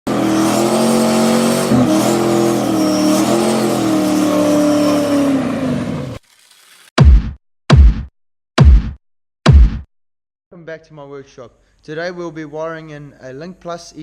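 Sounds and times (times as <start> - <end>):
engine revving high: 0.1 - 6.2.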